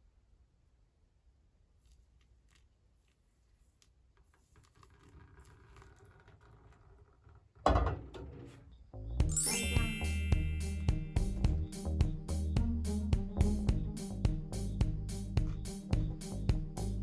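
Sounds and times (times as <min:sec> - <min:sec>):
background music with rising sweep: 0:09.2 - 0:17.0.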